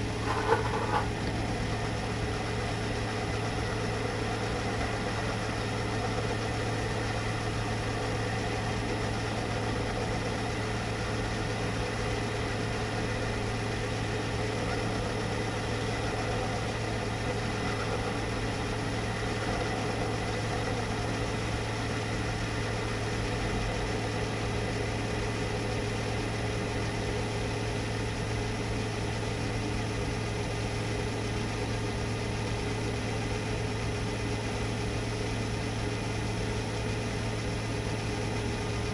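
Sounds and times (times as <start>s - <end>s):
metal lathe humming: 0.0s - 1.3s.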